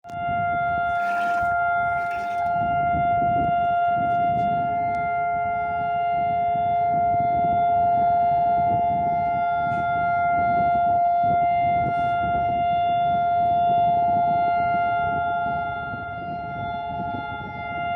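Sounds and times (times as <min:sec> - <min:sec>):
siren steady tone: 0:00.9 - 0:02.5.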